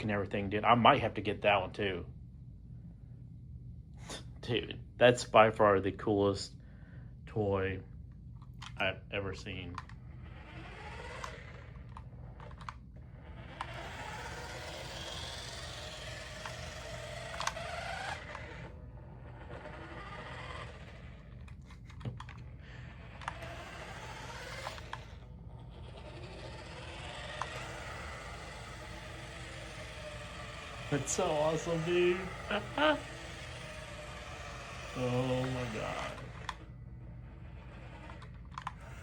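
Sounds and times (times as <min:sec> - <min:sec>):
toy car motor whirring: 0:08.4 - 0:39.0.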